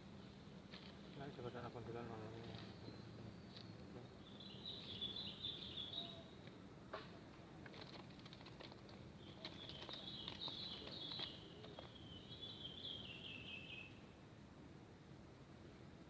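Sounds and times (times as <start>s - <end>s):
faint background noise: 0.0s - 16.0s
bird singing warbling phrase: 4.2s - 6.4s.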